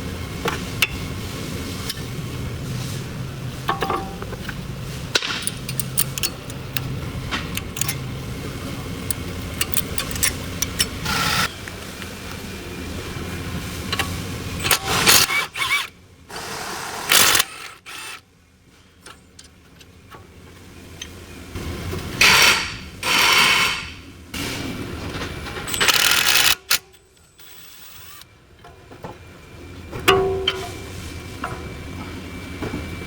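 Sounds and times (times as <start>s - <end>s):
mechanical tool rattling bursts: 5.2s - 8.1s, 9.0s - 11.5s, 14.7s - 15.9s, 17.0s - 18.2s, 25.7s - 26.9s.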